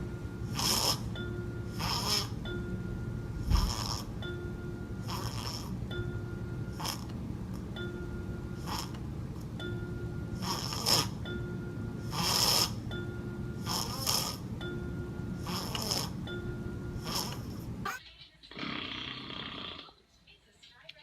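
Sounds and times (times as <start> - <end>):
baby snoring: 0.4 - 2.5, 3.4 - 4.3, 5.0 - 5.8, 6.7 - 7.6, 8.6 - 9.0, 10.3 - 11.3, 12.0 - 12.9, 13.5 - 14.5, 15.4 - 16.3, 17.0 - 18.0.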